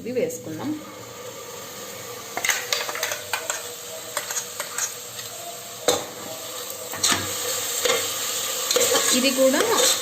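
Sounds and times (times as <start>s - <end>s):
food sizzling in hot oil: 0.0s - 10.0s
metal spoon scraping pot: 2.4s - 6.4s.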